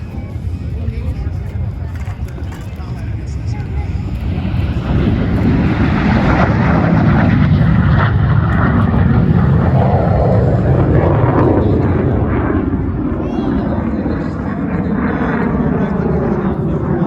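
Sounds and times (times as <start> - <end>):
airplane flying by: 0.0 - 17.0.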